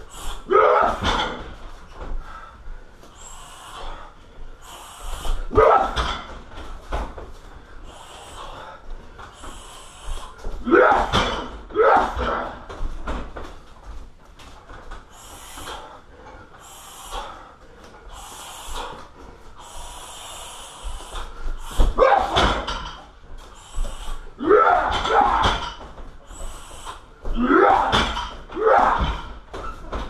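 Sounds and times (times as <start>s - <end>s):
person breathing sharply: 0.0s - 0.5s, 2.2s - 5.5s, 7.7s - 10.6s, 15.1s - 22.0s, 23.4s - 24.4s
voiced exhalations: 2.2s - 5.5s, 7.4s - 10.6s, 15.0s - 22.0s, 23.4s - 24.4s, 26.2s - 27.4s.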